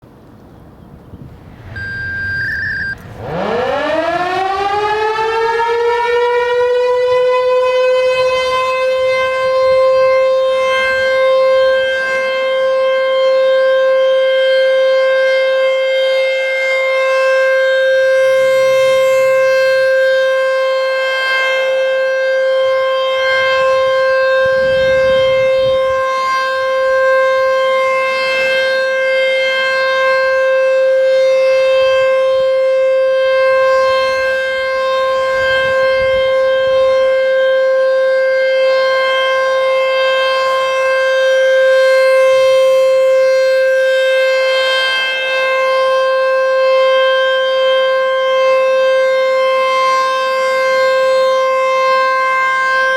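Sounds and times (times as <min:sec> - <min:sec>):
warning siren wailing: 0:00.1 - 0:52.9
short high beep: 0:01.6 - 0:03.1.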